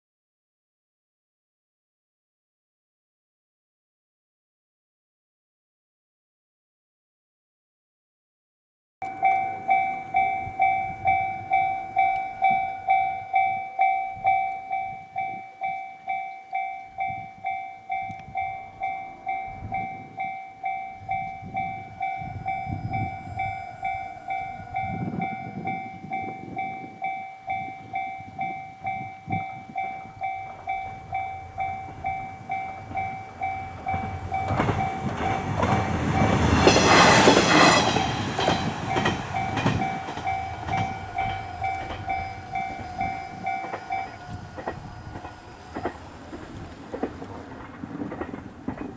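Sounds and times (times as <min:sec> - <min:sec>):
level crossing bell ringing: 0:09.0 - 0:46.0
train running noise: 0:09.0 - 0:48.9.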